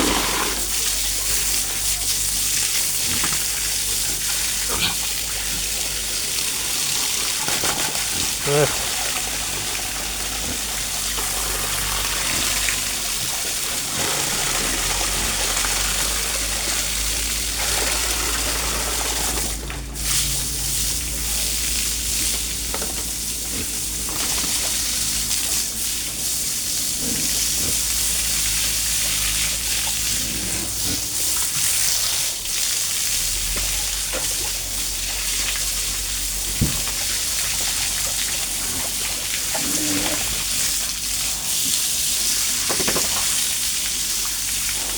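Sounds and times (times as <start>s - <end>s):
water rushing: 0.0s - 44.9s.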